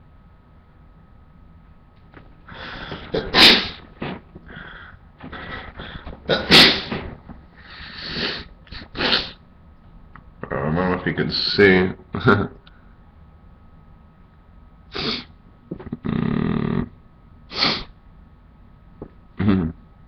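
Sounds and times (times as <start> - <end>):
noisy breaths: 2.2 - 9.4, 14.9 - 15.4, 17.5 - 18.0
man sneezing: 2.5 - 7.2, 7.8 - 9.4, 15.0 - 15.3, 17.5 - 17.9
gasping build-up: 2.5 - 9.3.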